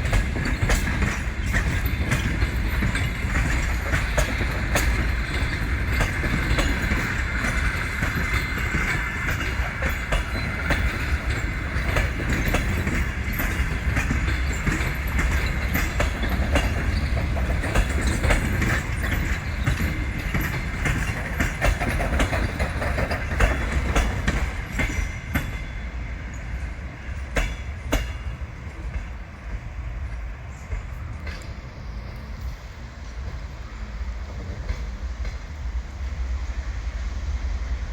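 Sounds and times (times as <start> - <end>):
train wheels knocking over rail joints: 0.0 - 29.6.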